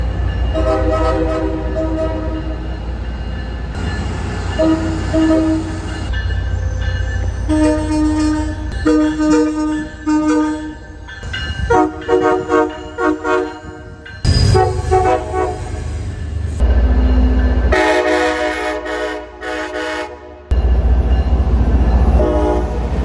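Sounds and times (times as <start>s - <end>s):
train horn blasts: 0.6s - 2.5s, 4.5s - 5.9s, 7.5s - 10.8s, 11.7s - 13.7s, 14.4s - 15.9s, 17.7s - 20.5s, 22.2s - 23.0s.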